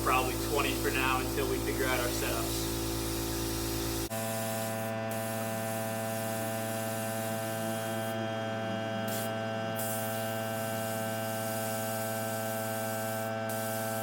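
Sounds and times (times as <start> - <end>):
steady hum: 0.0 - 4.1
air hissing from tire valve: 0.0 - 7.6, 9.1 - 14.0.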